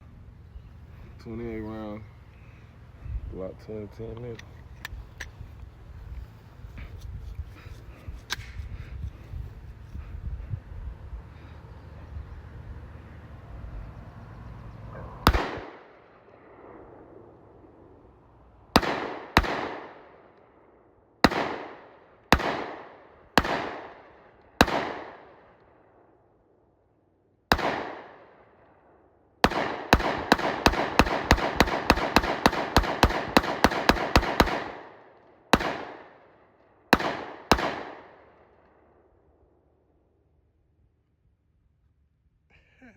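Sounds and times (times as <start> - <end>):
pistol shots with echo: 15.2 - 26.2, 27.5 - 39.0.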